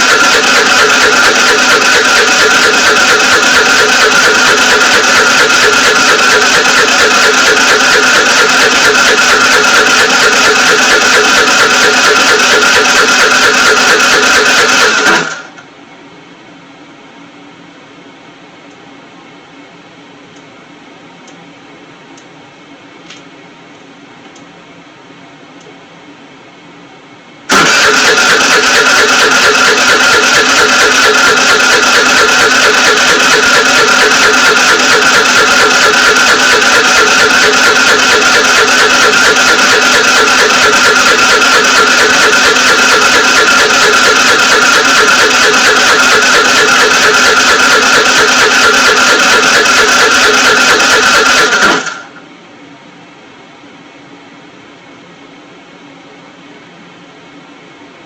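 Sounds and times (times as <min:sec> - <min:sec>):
scooter starter cranking engine: 0:00.0 - 0:15.6, 0:27.5 - 0:52.2.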